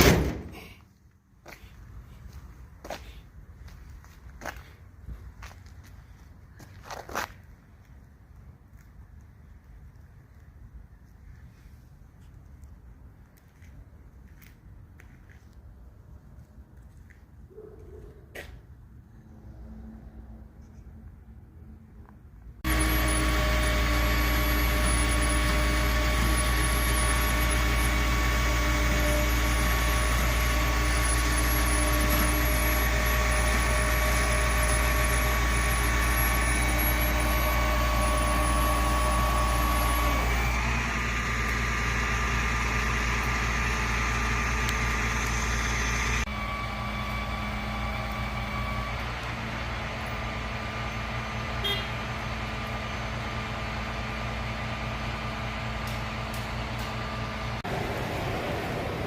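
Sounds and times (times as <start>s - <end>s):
vehicle engine idling: 22.6s - 59.0s.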